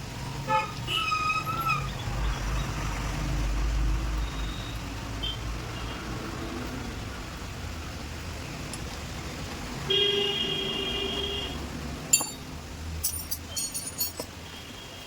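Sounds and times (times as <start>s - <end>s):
low traffic rumble: 0.0s - 15.0s
vehicle horn: 9.9s - 11.6s.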